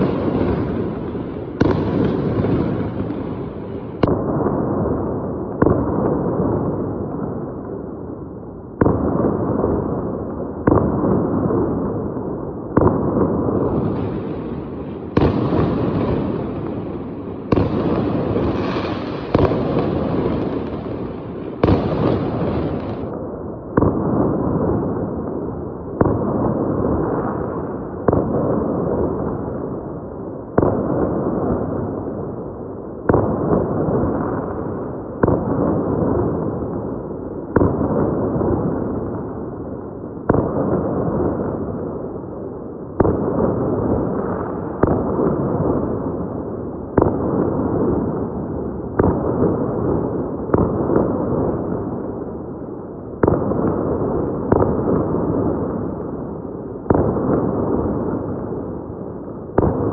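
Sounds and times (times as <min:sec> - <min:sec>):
firework bangs: 0:00.0 - 0:04.7, 0:12.8 - 0:23.1, 0:59.5 - 0:59.9
fireworks crackling and rumbling: 0:00.0 - 0:07.8, 0:08.8 - 0:59.9.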